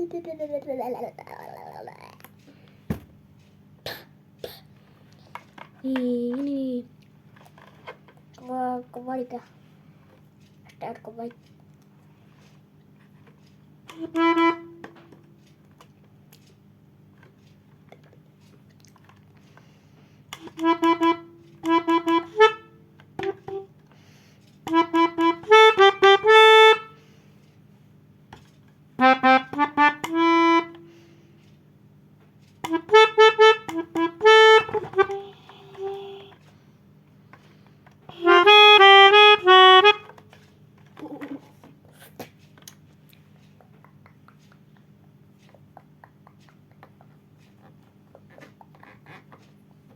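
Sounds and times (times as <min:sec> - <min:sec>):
melodica playing quick notes: 0:32.7 - 0:36.3, 0:38.1 - 0:40.1.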